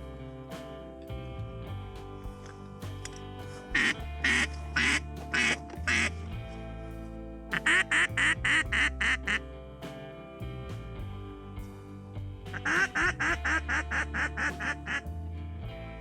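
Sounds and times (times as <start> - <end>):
background music: 0.0 - 16.0
duck quacking: 12.6 - 15.0.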